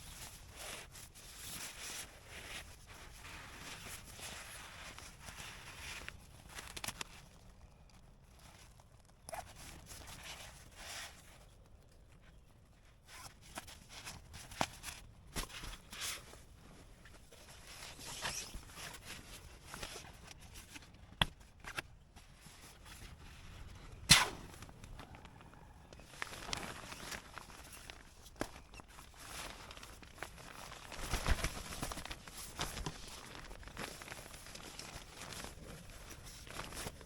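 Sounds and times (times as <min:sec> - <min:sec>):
fabric rustling and scraping: 0:12.2 - 0:25.2, 0:25.9 - 0:37.0.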